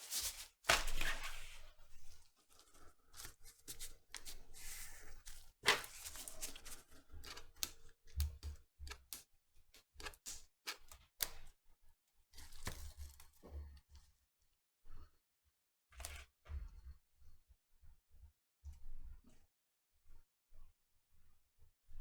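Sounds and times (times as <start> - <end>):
tape rustling scrapes: 0.0 - 1.7.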